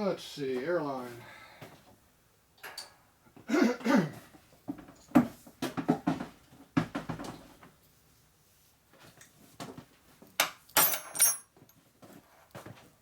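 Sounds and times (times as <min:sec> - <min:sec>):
metal tools knocking and clattering: 0:10.4 - 0:11.5.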